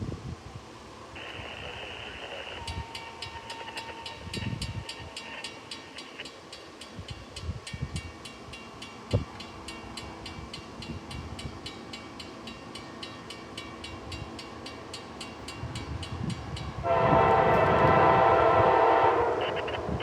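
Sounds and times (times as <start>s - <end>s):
diesel locomotive rumble: 6.9s - 20.0s
locomotive air horn blast: 16.8s - 20.0s.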